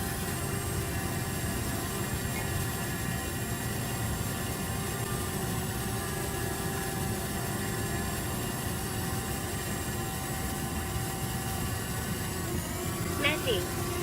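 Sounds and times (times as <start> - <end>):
drone propellers humming: 0.0 - 14.0.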